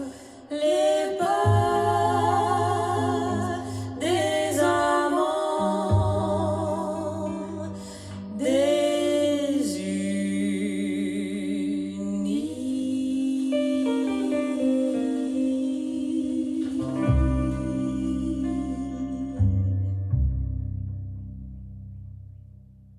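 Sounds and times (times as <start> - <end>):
plucked guitar: 0.0 - 11.2, 13.4 - 22.9
person singing with vibrato: 0.0 - 20.0
sustained low tones: 0.0 - 22.9
deep bass note: 16.8 - 22.9.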